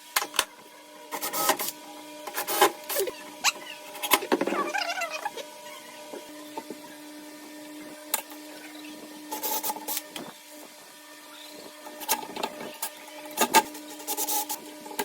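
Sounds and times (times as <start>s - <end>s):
steady hum: 0.0s - 15.0s
short scraping rubs: 13.6s - 14.6s.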